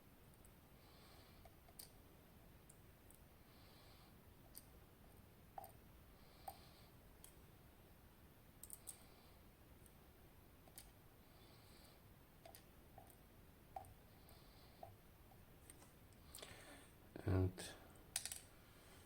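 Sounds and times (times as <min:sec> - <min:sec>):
small clicks of metal lock parts: 0:18.2 - 0:18.5.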